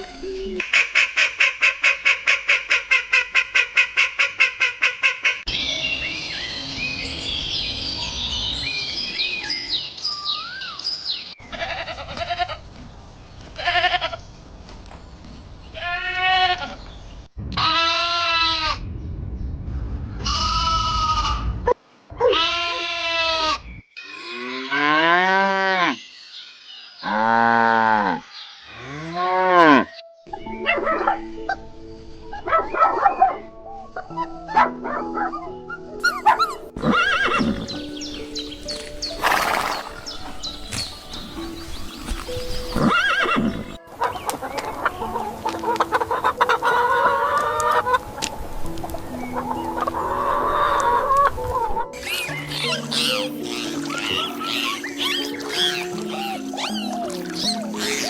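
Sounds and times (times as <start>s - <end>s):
livestock bleating: 17.6s - 18.8s, 22.2s - 23.6s, 36.8s - 38.8s, 40.7s - 43.8s
long low animal calls: 36.0s - 43.8s
bird chirps: 36.0s - 44.7s, 52.0s - 58.0s.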